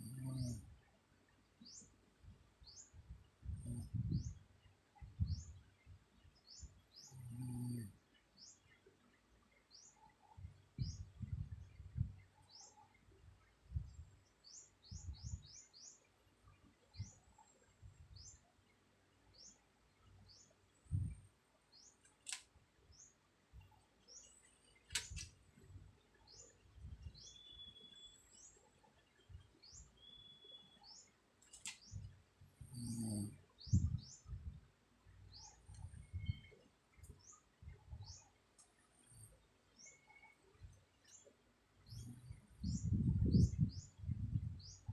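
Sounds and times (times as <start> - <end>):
small birds chirping: 0.0 - 44.9
sharp clicks: 22.0 - 22.5, 24.8 - 25.4, 31.4 - 31.9
whistled bird notes: 27.2 - 28.5, 29.7 - 31.1.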